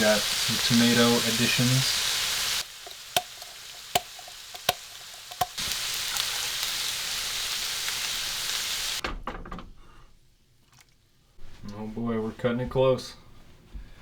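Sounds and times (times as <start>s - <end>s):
food sizzling in a pot: 0.0s - 9.0s
utensil clicking against pot: 2.8s - 5.6s.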